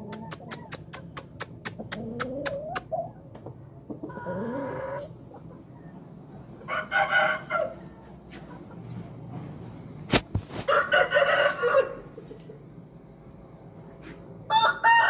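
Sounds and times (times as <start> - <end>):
rooster crowing: 6.6 - 7.8, 10.7 - 12.1, 14.5 - 15.0.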